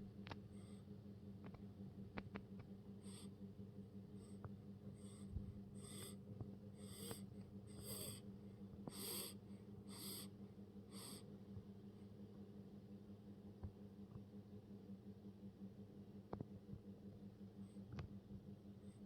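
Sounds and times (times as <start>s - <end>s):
baby snoring: 5.8s - 6.2s, 6.8s - 8.2s, 8.8s - 11.2s.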